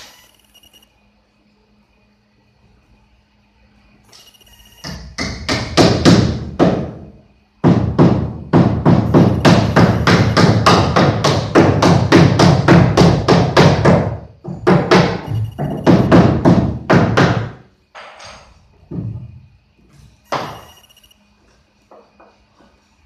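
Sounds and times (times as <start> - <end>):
rapid evenly spaced knocks: 4.8 - 19.4.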